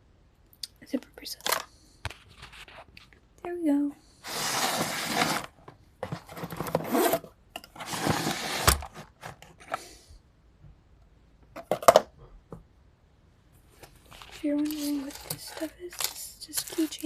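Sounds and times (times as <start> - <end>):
zipper rasping: 6.7 - 7.3.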